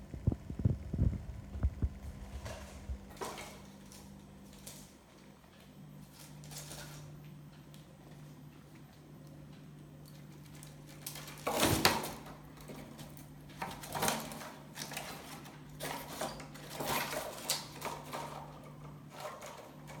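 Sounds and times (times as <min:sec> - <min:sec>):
steady low hum: 0:00.0 - 0:11.2.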